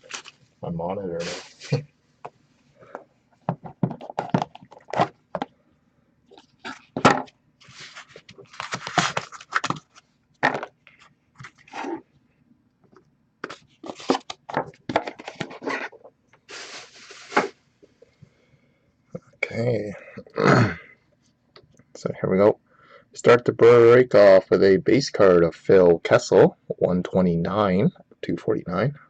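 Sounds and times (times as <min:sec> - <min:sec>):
packaging crinkling and tearing: 0:00.0 - 0:00.4, 0:07.7 - 0:10.0.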